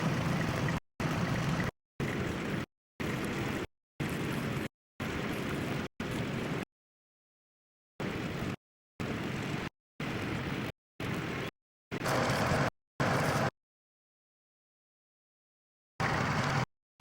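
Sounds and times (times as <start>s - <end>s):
tractor engine running: 0.0s - 3.2s, 12.0s - 13.5s, 16.0s - 16.7s.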